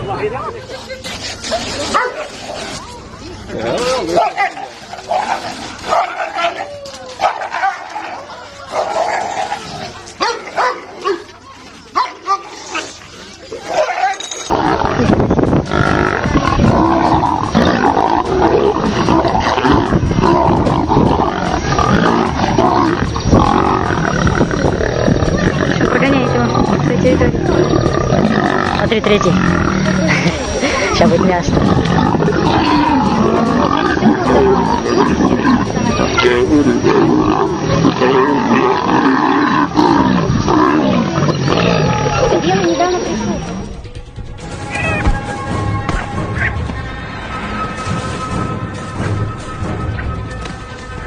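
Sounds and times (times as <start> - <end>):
lions growling and roaring: 12.6 - 43.8.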